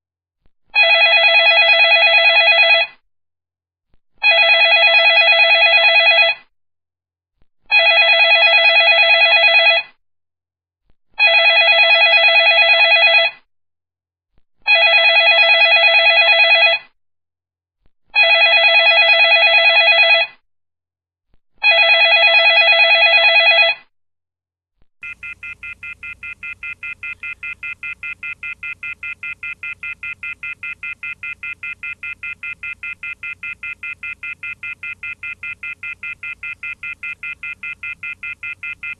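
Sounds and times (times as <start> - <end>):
telephone ringing: 0.8 - 2.9, 4.2 - 6.4, 7.7 - 9.9, 11.2 - 13.4, 14.7 - 16.9, 18.2 - 20.4, 21.6 - 23.9, 25.0 - 38.9
pulsing telephone tone: 25.0 - 38.9.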